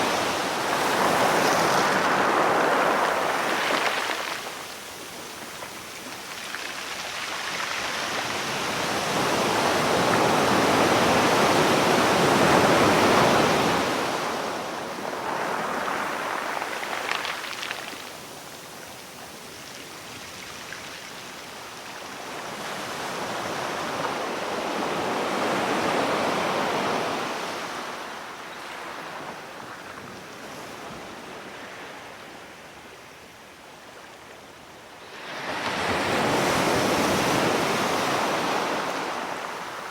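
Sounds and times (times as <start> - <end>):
sea waves washing: 0.0 - 18.7.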